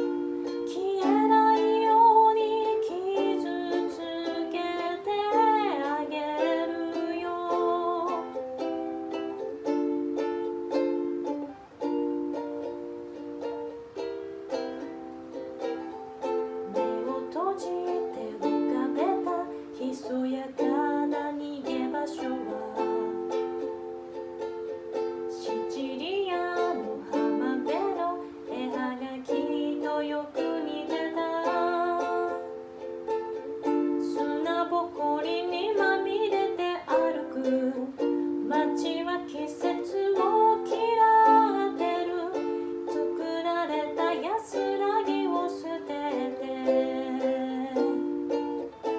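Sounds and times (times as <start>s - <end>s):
ukulele playing: 0.0s - 48.9s.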